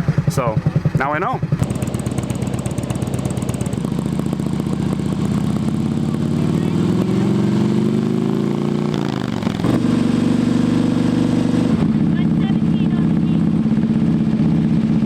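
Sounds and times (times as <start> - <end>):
vehicle engine revving: 0.0 - 15.0.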